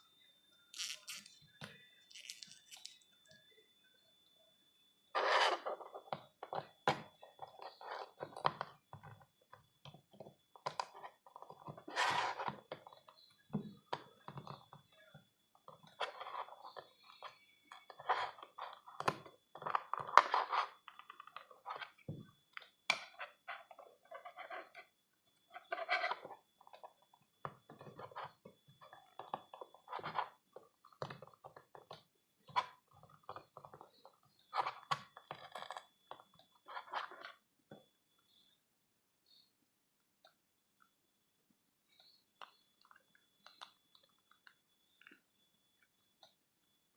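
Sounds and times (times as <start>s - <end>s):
plastic packaging rustling: 2.1s - 3.0s.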